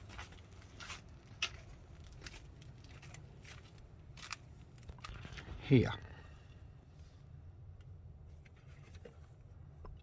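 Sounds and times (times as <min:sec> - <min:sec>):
faint handling clicks and rustles: 0:00.0 - 0:05.7, 0:06.5 - 0:10.0
low steady hum: 0:00.0 - 0:10.0.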